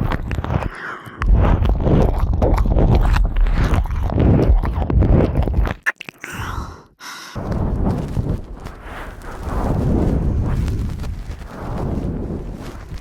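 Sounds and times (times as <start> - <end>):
wet mouth licking sounds: 0.0 - 6.9.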